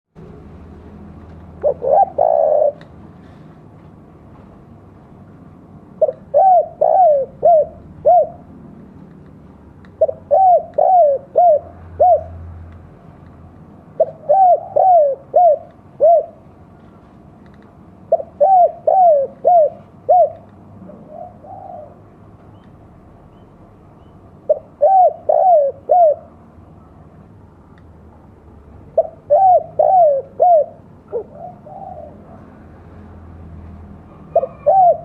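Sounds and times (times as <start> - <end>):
dove cooing: 1.6 - 3.4, 6.0 - 8.5, 10.0 - 12.4, 14.0 - 16.5, 18.1 - 22.1, 24.5 - 26.4, 28.9 - 32.6, 34.1 - 35.0.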